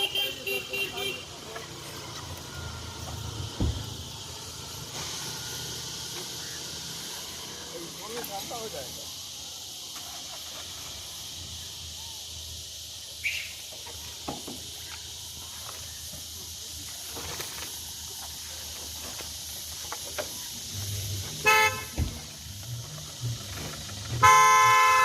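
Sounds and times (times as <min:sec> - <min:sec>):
vehicle horn honk: 0:00.0 - 0:01.4, 0:21.4 - 0:22.0, 0:24.2 - 0:25.0
high-pitched hiss: 0:00.0 - 0:25.0.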